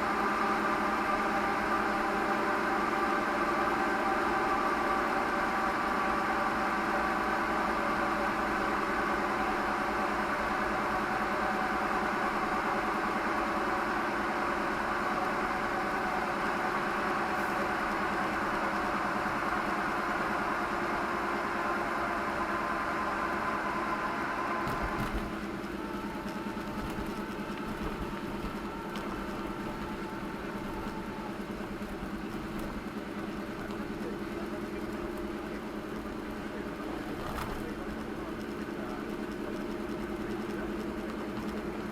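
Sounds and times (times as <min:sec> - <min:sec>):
car engine running: 0:24.4 - 0:41.9.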